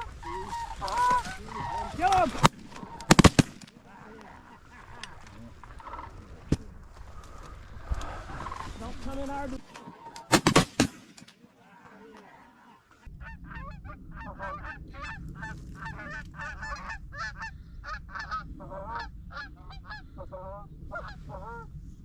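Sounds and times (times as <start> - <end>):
geese honking: 0.0 - 6.4
shotgun shots: 2.4 - 3.7, 10.3 - 11.3.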